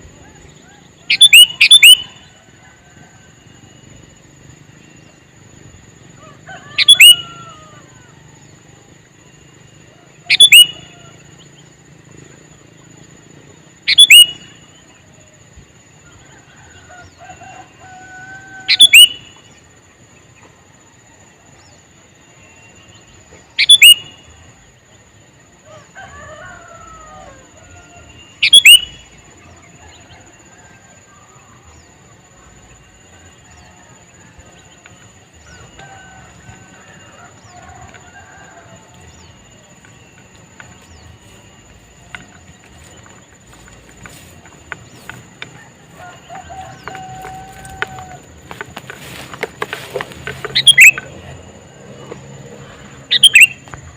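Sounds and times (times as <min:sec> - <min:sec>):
birds warbling: 0:00.0 - 0:03.0, 0:06.0 - 0:08.6, 0:10.0 - 0:15.1, 0:16.1 - 0:19.8, 0:22.4 - 0:24.4, 0:25.6 - 0:53.9
bird sharp call: 0:01.1 - 0:02.2, 0:06.6 - 0:07.7, 0:10.3 - 0:11.1, 0:13.9 - 0:14.5, 0:18.6 - 0:19.4, 0:23.6 - 0:24.2, 0:28.4 - 0:29.0, 0:49.6 - 0:51.1, 0:53.1 - 0:53.6.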